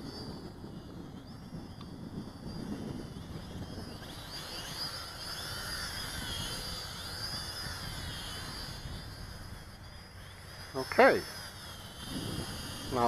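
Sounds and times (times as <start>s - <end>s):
drone propellers whining: 0.0s - 13.0s.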